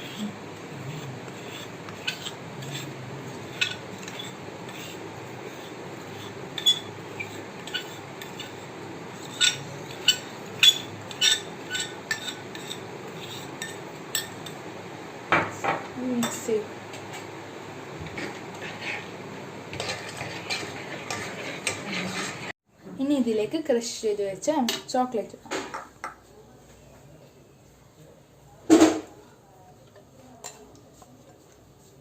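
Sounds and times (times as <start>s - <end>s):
metal utensil scraping a pan: 0.0s - 8.6s, 9.2s - 14.4s, 18.1s - 22.6s.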